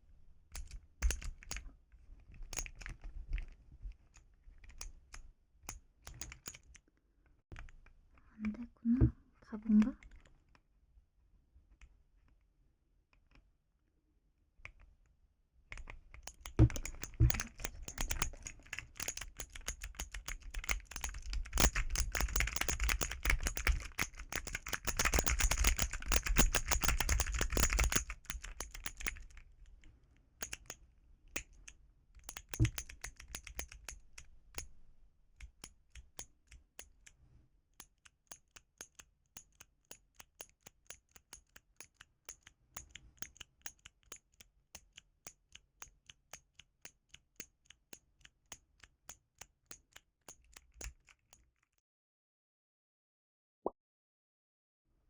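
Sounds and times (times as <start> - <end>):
fidget toy keys clacking: 15.8 - 29.4, 31.4 - 34.7, 37.8 - 51.5.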